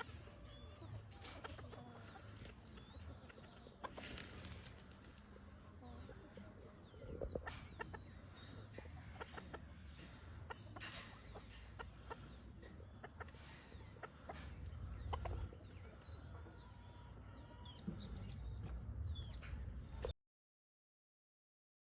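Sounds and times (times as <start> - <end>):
chickens clucking: 0.0 - 20.1.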